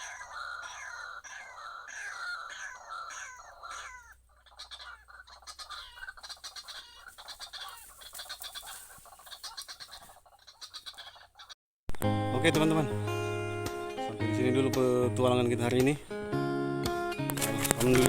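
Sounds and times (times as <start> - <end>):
waterhen calling: 0.0 - 11.6.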